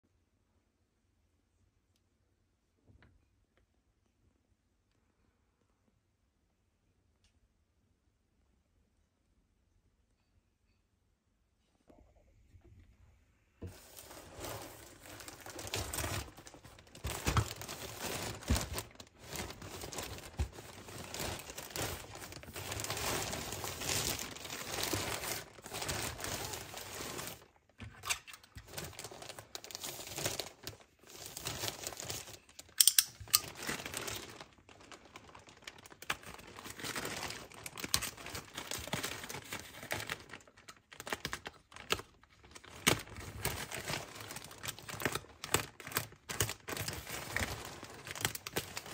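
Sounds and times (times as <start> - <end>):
plastic and paper wrap crinkling: 13.6 - 48.9.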